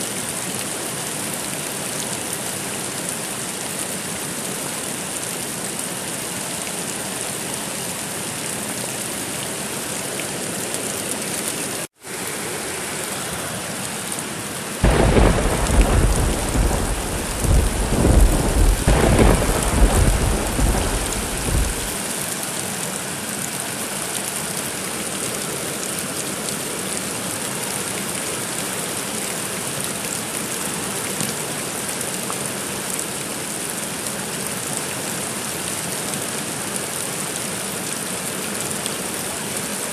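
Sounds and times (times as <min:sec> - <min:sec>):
steady rain hiss: 0:00.0 - 0:39.9
rolling thunder: 0:14.8 - 0:22.0.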